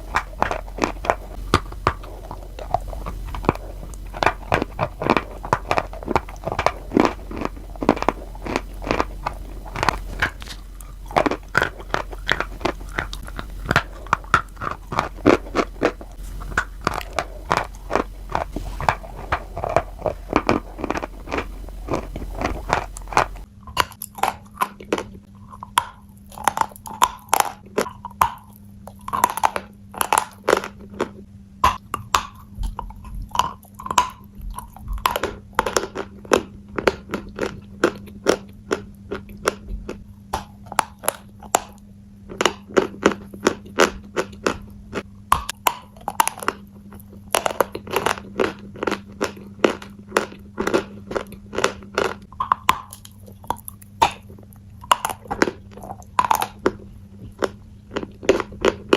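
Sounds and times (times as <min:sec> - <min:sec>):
person chewing crunchy food: 0:00.0 - 0:58.9.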